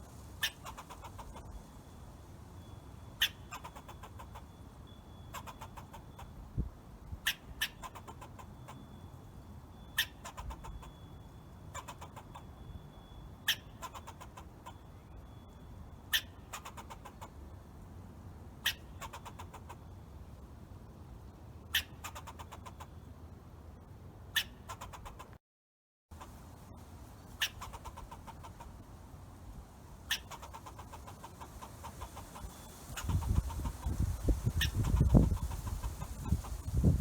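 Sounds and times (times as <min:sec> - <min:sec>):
squirrel chip and chatter: 0:00.4 - 0:01.5, 0:03.2 - 0:04.4, 0:05.3 - 0:06.3, 0:10.0 - 0:10.9, 0:11.7 - 0:12.4, 0:16.1 - 0:17.4, 0:18.6 - 0:19.8, 0:27.2 - 0:28.8, 0:30.1 - 0:37.0.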